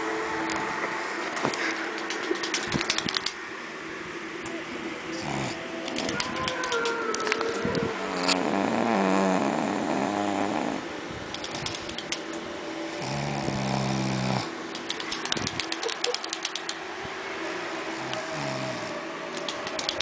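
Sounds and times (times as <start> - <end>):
person snoring: 5.2 - 5.6, 8.0 - 10.9, 13.0 - 14.5, 18.0 - 19.0.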